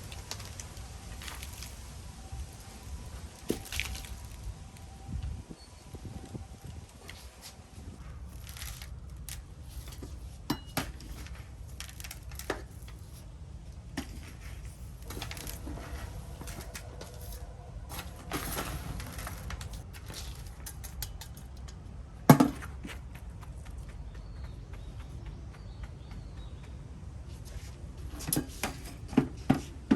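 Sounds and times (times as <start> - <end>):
steady low rumble: 11.2 - 28.1
handling clicks and clinks: 17.9 - 23.5.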